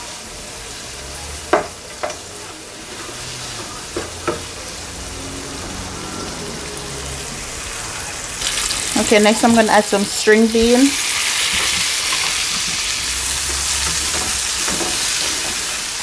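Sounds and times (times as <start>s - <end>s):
vegetables sizzling in a skillet: 0.0s - 16.0s
utensil knocking against pan: 3.6s - 4.5s.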